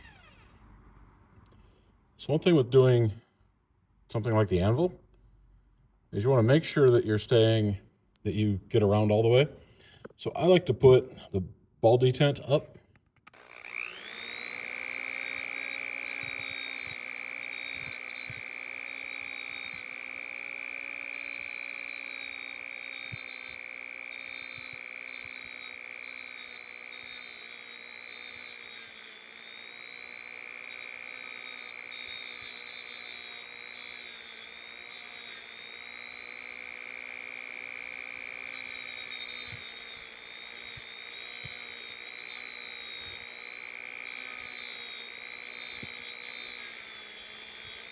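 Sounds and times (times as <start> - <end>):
rotary tool whining: 0.0 - 1.8, 13.0 - 47.9.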